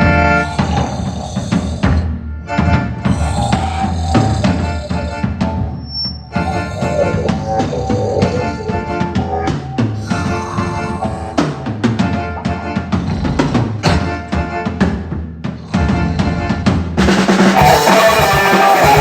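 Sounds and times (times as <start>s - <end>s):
drum kit beat: 2.6s - 19.0s
rock band playing: 13.9s - 19.0s.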